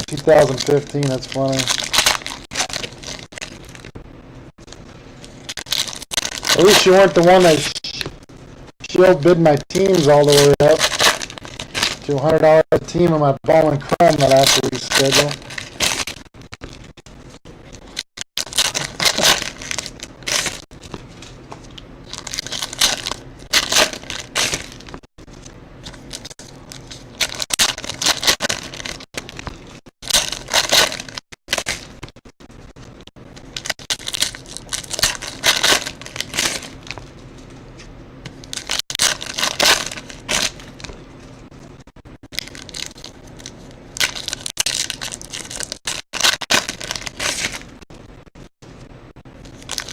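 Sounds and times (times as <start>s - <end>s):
wrappers torn and crumpled: 0.0s - 3.9s, 5.2s - 7.6s, 9.7s - 12.4s, 14.0s - 16.9s, 17.7s - 21.3s, 22.0s - 32.0s, 33.4s - 37.1s, 38.4s - 41.0s, 42.3s - 47.8s, 49.4s - 49.9s.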